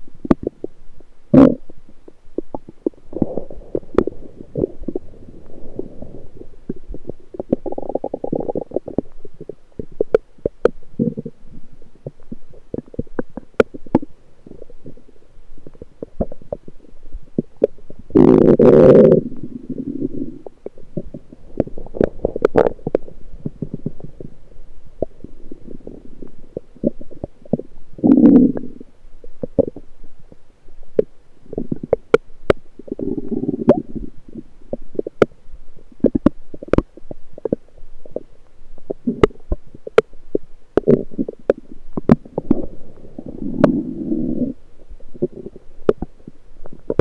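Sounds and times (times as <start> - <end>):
bowel gurgling: 2.4 - 10.2.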